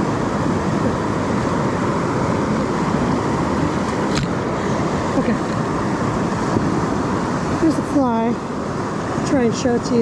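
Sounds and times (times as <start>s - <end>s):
creek rushing: 0.0s - 10.0s.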